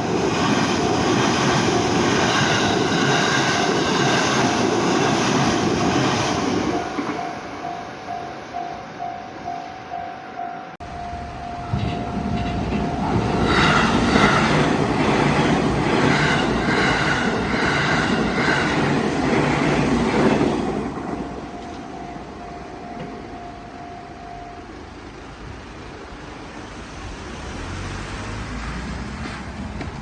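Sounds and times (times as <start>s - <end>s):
train passing: 0.0s - 30.0s
level crossing alarm ringing: 6.6s - 15.6s, 21.0s - 25.0s.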